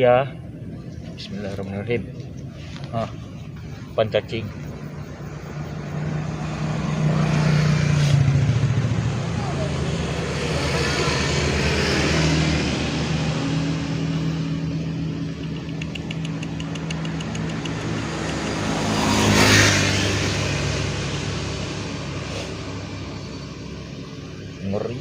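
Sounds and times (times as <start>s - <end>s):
vehicle engine passing by: 0.0s - 25.0s
high rapid ticks: 15.3s - 18.8s.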